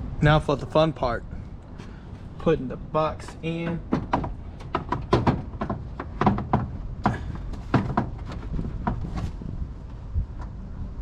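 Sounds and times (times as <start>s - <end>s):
plastic knocks and clicks: 3.3s - 9.2s.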